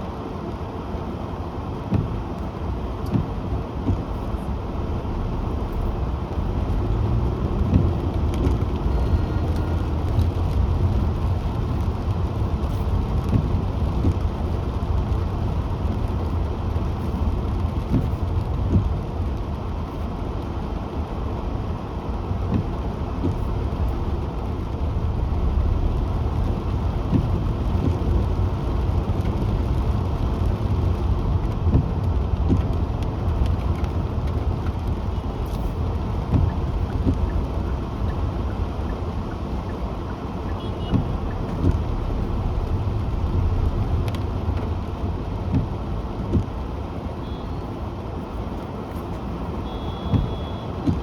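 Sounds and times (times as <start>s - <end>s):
road and tyre rumble: 0.0s - 51.0s.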